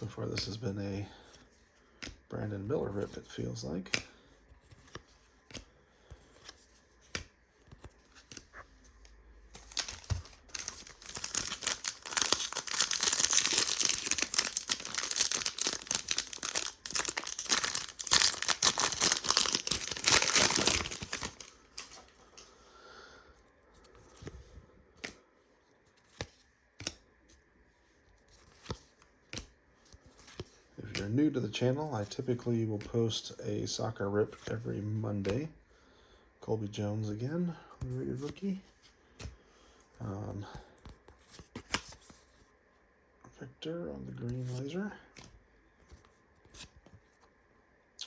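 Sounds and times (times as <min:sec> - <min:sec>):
cards clicking: 0:09.6 - 0:22.0
plastic wrapper tearing and crinkling: 0:09.6 - 0:22.0.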